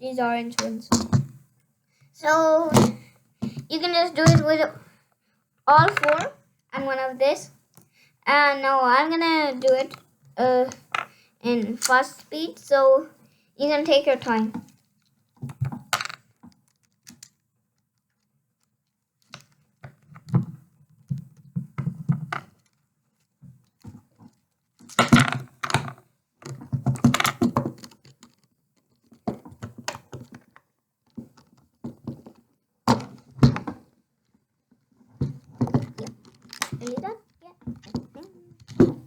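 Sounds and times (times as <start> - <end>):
plastic bricks clicking and clattering: 5.7 - 6.4, 35.6 - 39.0.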